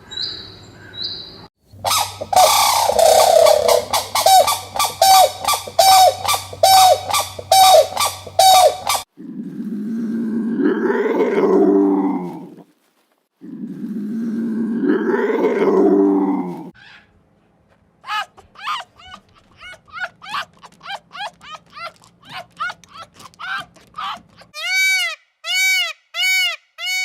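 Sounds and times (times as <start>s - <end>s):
bird squawking: 1.8s - 9.1s
long low animal calls: 1.8s - 12.6s.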